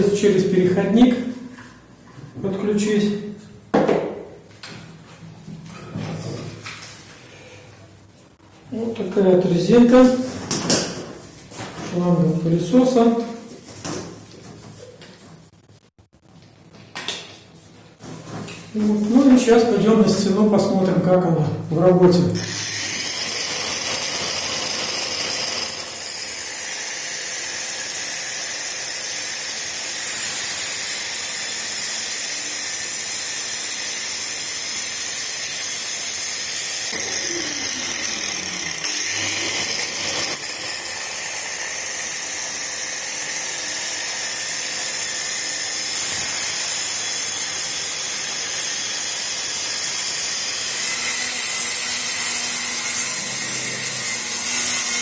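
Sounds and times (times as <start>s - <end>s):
shop vacuum running: 22.3s - 55.0s
angle grinder cutting into wall: 22.4s - 55.0s.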